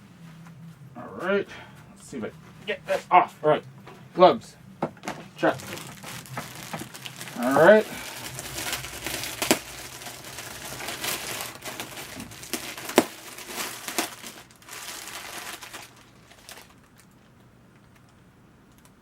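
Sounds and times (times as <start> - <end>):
packaging crinkling: 4.9 - 19.0.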